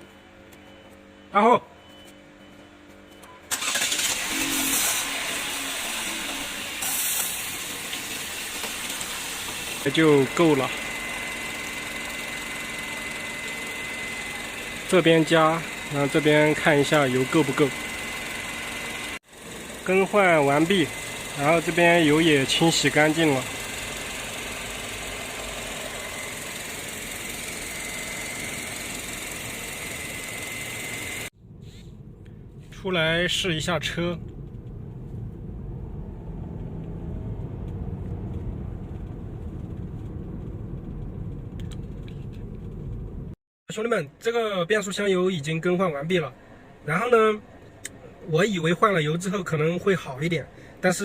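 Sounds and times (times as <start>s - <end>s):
engine running: 1.9s - 43.4s
hissing gush of fluid: 4.6s - 10.5s
high-pitched whine: 19.8s - 42.3s.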